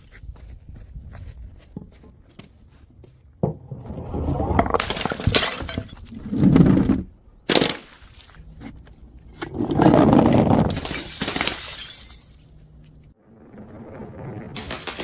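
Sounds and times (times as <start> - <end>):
glass bottles smashing: 4.8 - 6.1, 10.7 - 12.6.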